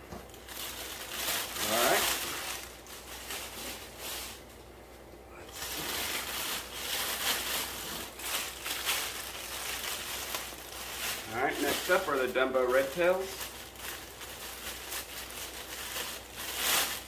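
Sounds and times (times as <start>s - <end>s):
plastic bags rustling and crinkling: 0.0s - 4.7s, 5.4s - 17.0s.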